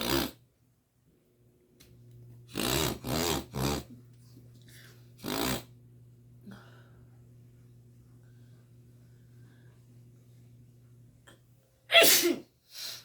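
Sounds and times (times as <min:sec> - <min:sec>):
woman sneezing: 0:11.9 - 0:12.5.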